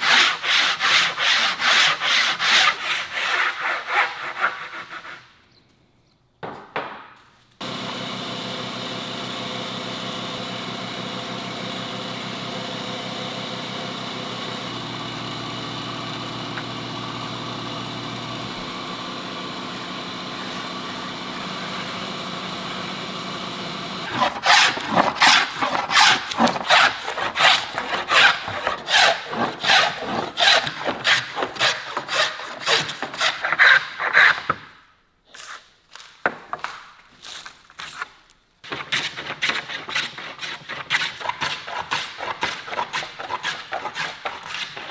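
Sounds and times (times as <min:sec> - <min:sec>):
tool strokes on wood: 0:00.0 - 0:05.2, 0:14.0 - 0:23.0, 0:24.0 - 0:34.6, 0:38.7 - 0:44.9
power tool motor running: 0:07.6 - 0:33.0.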